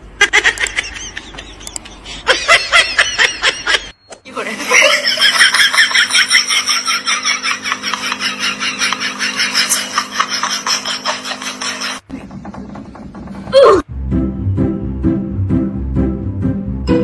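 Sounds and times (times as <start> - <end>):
person laughing: 0.2 - 3.9, 4.6 - 12.0.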